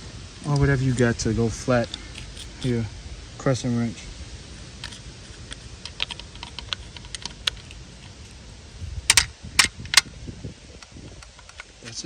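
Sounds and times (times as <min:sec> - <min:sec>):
wrench clicking on metal: 0:01.9 - 0:02.8, 0:04.8 - 0:08.2.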